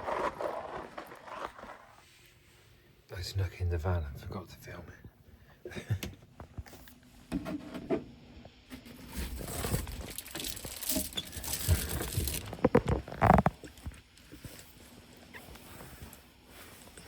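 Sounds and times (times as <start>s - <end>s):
rustling and crinkling: 0.0s - 2.5s, 8.8s - 17.0s.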